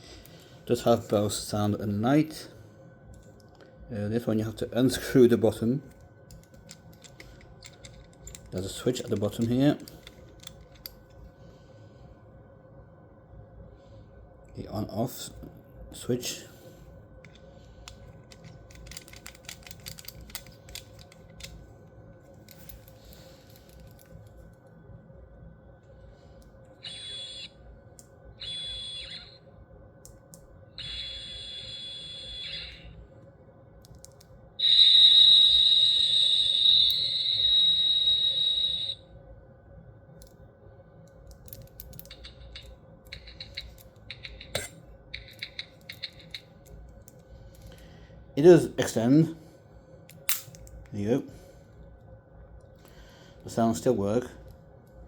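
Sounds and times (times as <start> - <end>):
toy plastic clicks and rattles: 6.3 - 11.0, 17.3 - 21.6, 41.3 - 46.8
toy high electronic whine: 26.8 - 27.6, 28.3 - 29.5, 30.7 - 33.0, 34.6 - 39.1.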